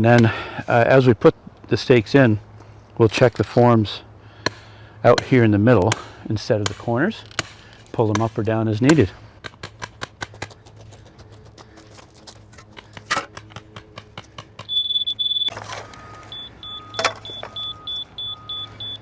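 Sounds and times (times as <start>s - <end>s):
laser level receiver beeping: 14.7s - 19.0s.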